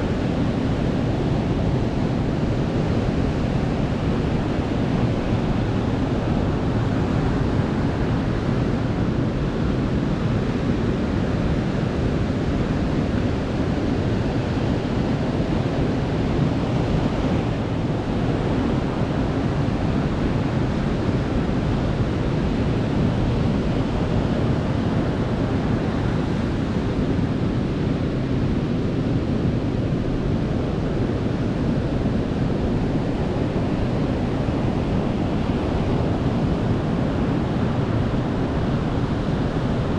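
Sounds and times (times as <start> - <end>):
ocean surf washing onto beach: 0.0 - 39.9.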